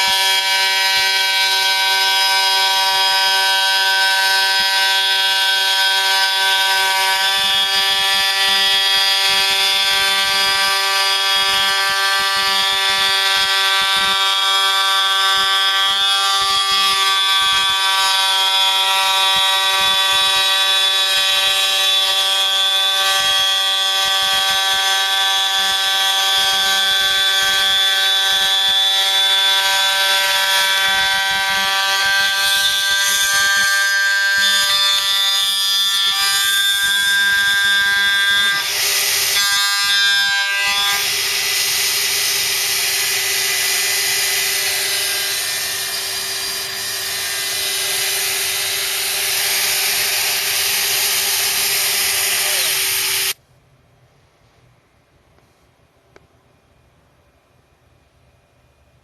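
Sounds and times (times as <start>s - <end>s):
cutter hissing: 41.0s - 53.4s
mill spindle whining: 41.0s - 53.4s.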